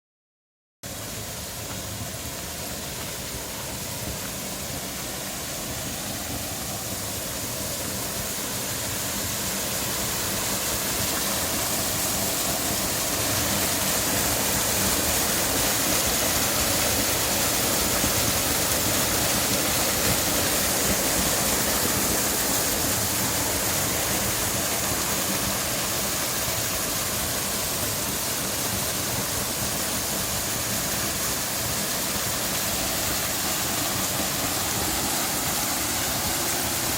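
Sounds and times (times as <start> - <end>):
waterfall rushing: 0.9 - 36.9.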